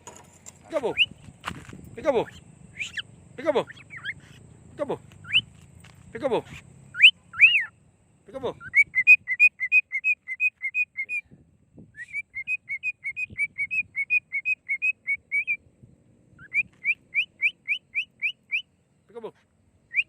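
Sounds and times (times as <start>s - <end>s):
cockatiel whistling: 2.7s - 3.1s, 3.7s - 4.4s, 5.2s - 5.5s, 6.9s - 7.7s, 8.6s - 11.2s, 12.0s - 15.6s, 16.4s - 18.7s.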